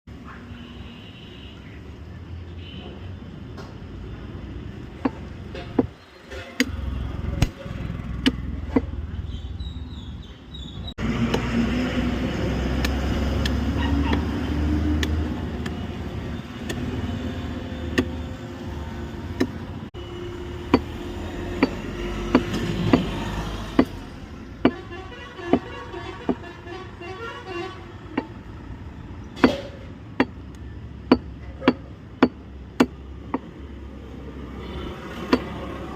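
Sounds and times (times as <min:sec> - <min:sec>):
traffic rumble: 0:00.1 - 0:35.9
cleaver chopping meat and bone: 0:07.4 - 0:09.0, 0:11.2 - 0:11.7, 0:12.7 - 0:15.8, 0:16.6 - 0:17.0, 0:17.8 - 0:18.2, 0:19.4 - 0:19.6, 0:20.6 - 0:24.0, 0:31.0 - 0:33.5, 0:34.8 - 0:35.8.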